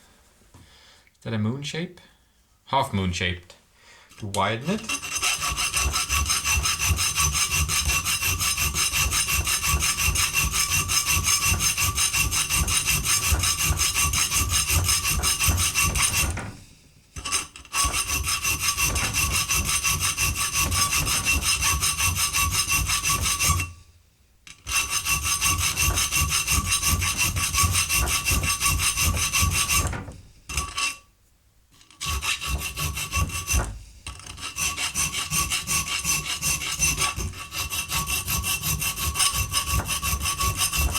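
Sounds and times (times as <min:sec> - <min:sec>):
hand file rasping: 0:04.1 - 0:16.6, 0:17.2 - 0:23.8, 0:24.5 - 0:31.0, 0:31.8 - 0:40.9.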